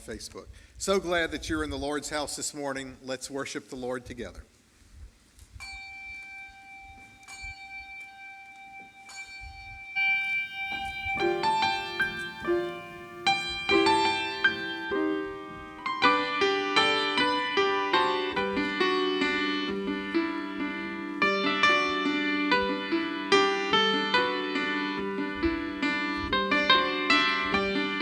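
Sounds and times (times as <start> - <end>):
instrumental keyboard music: 10.0 - 14.9.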